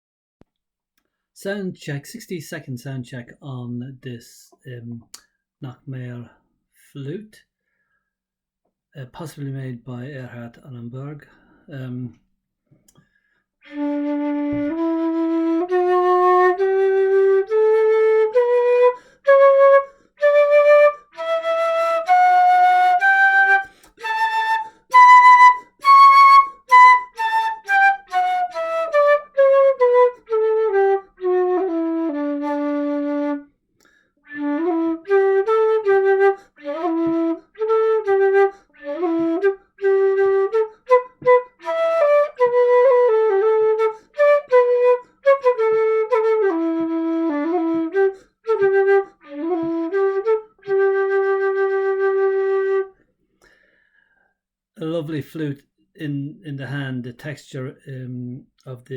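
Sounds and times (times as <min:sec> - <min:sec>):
wooden flute playing: 0:13.6 - 0:33.5, 0:34.2 - 0:53.0.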